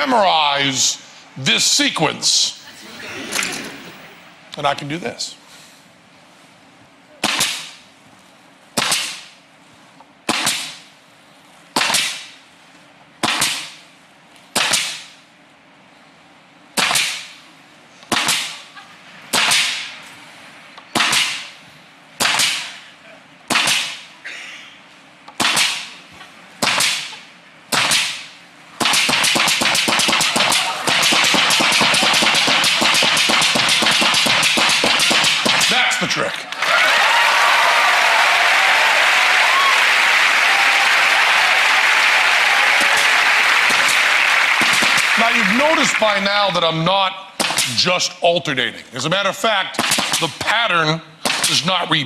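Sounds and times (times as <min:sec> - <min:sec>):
pneumatic nail gun firing: 0:26.6 - 0:28.2, 0:28.8 - 0:35.7, 0:49.8 - 0:50.3
loud continuous rattle: 0:28.8 - 0:35.8.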